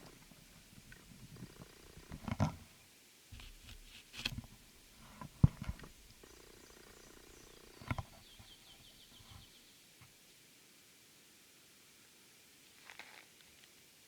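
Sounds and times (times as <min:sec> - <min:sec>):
turkey purring: 0:00.0 - 0:02.7, 0:04.9 - 0:08.4
rustles and knocks: 0:03.3 - 0:06.2.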